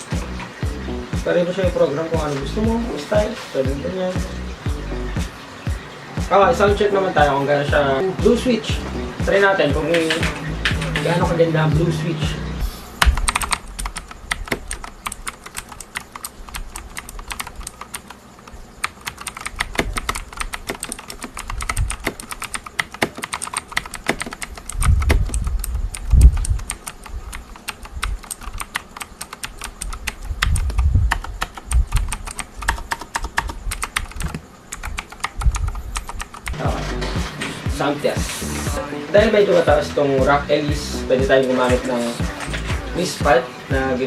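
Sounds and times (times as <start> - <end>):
fast typing on mechanical keyboard: 9.3 - 11.4, 13.0 - 36.6.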